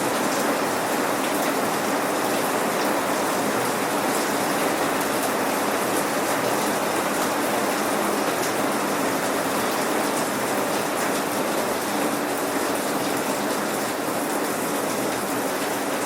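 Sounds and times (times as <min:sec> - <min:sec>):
steady rain patter: 0:00.0 - 0:16.0.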